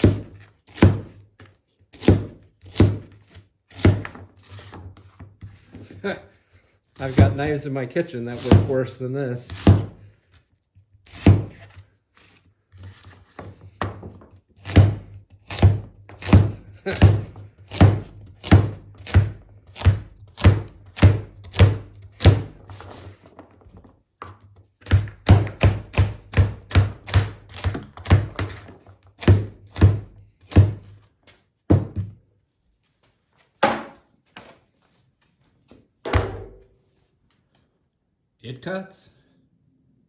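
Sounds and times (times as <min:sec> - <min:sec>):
knife chopping vegetables on board: 0:00.0 - 0:01.2, 0:01.9 - 0:04.8, 0:08.3 - 0:08.7, 0:09.5 - 0:10.0, 0:11.1 - 0:11.7, 0:12.8 - 0:22.8, 0:24.8 - 0:31.0.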